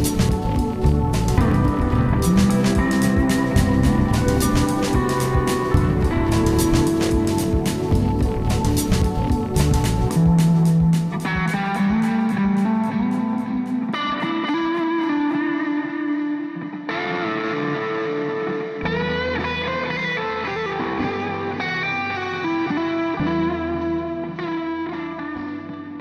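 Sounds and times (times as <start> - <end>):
bass line: 0.0 - 13.8
electric guitar music with effects: 0.0 - 26.0.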